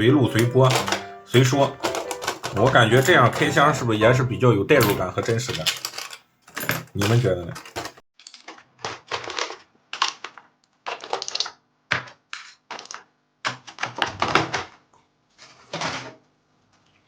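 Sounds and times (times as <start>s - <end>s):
small plastic parts clicking: 0.3s - 3.8s, 4.8s - 13.0s.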